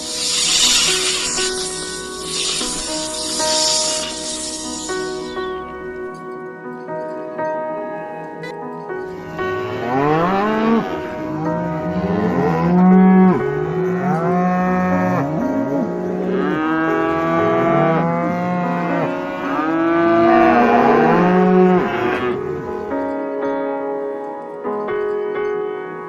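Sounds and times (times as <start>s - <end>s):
cattle mooing: 16.3s - 22.5s.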